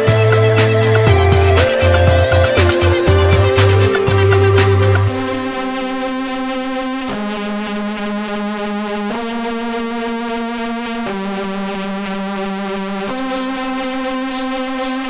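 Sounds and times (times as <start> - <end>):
sustained synthesizer chords: 0.0 - 7.1.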